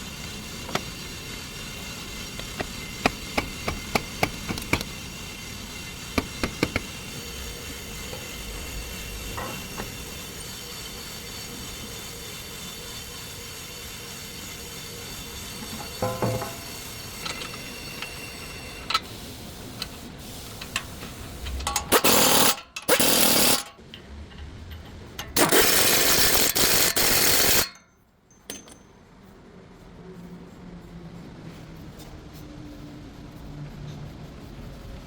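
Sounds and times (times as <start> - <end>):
power tool running: 0.0 - 10.0, 22.0 - 23.7, 25.4 - 27.7
low mechanical hum: 0.0 - 35.0.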